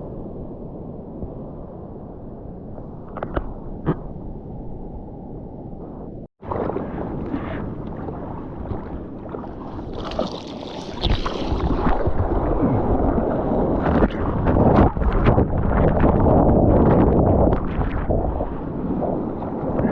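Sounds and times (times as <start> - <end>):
wind buffeting microphone: 0.0 - 19.9
ocean water sloshing and splashing: 6.4 - 19.9.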